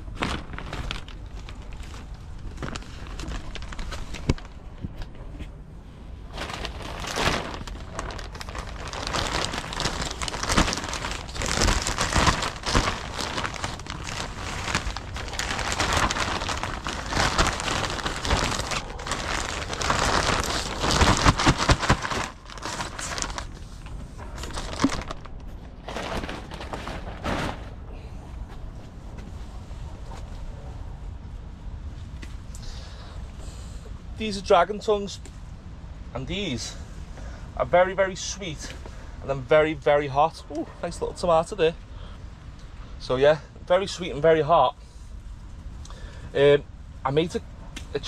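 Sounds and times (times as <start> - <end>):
leafy plants rustling and crackling: 0.0 - 5.2, 5.9 - 27.9.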